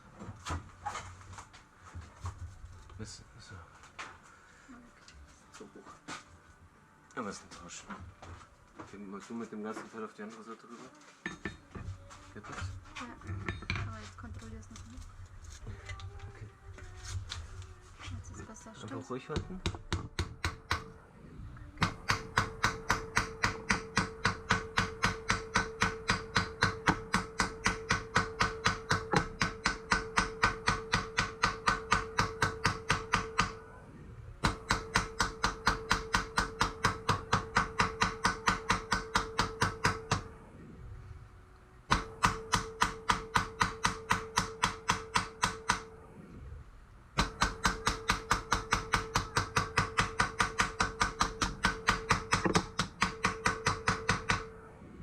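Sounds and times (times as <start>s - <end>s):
hammer striking rivet: 21.8s - 33.6s, 34.4s - 40.3s, 41.9s - 45.9s, 47.2s - 54.5s.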